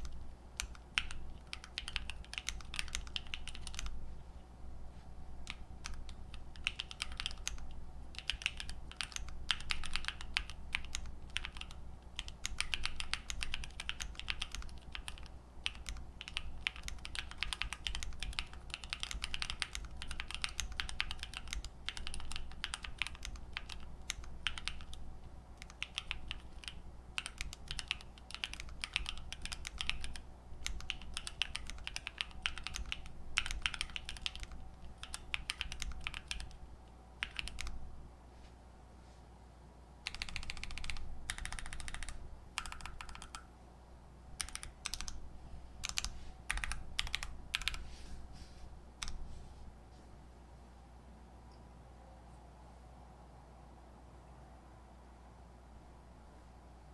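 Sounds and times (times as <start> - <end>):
mechanical keyboard typing: 0.0 - 4.0, 5.4 - 37.8, 40.0 - 43.5, 44.4 - 45.2, 45.8 - 47.8, 49.0 - 49.2.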